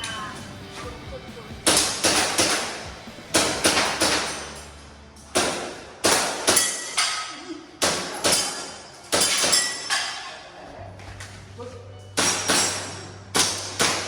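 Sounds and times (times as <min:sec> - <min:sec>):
pellets ringing on steel targets: 0:01.6 - 0:10.4, 0:12.0 - 0:14.0
airsoft pistol shots: 0:01.7 - 0:04.5, 0:12.2 - 0:14.0.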